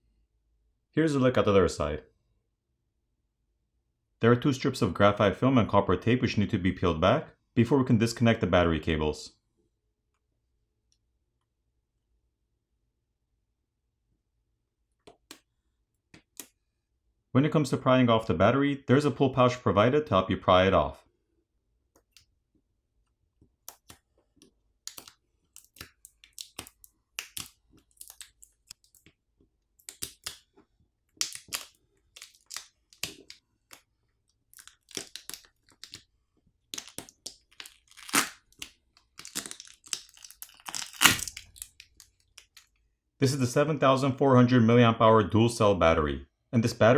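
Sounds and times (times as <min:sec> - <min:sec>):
adhesive crackling and tearing: 0:24.8 - 0:29.2, 0:29.8 - 0:42.7.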